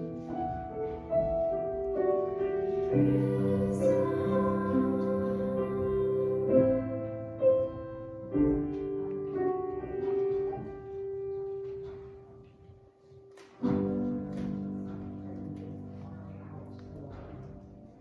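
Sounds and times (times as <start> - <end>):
hymn played on keyboard: 0.0 - 12.1.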